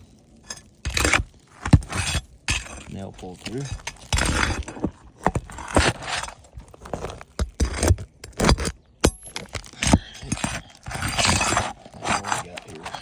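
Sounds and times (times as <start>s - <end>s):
hand tools scraping shingles: 0.0s - 13.0s.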